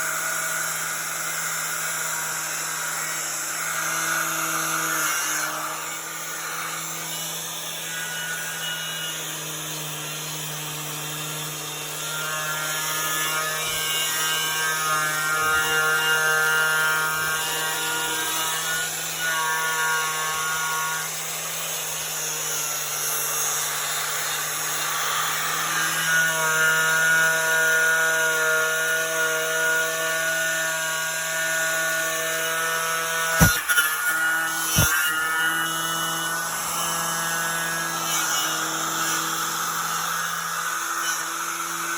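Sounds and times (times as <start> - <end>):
angle grinder wire brush on metal: 23.2 - 41.9.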